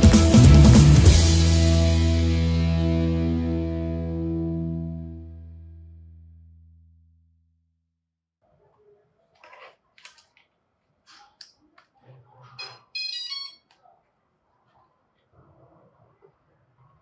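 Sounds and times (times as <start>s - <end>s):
electronic multi-tone beep: 12.6s - 13.6s.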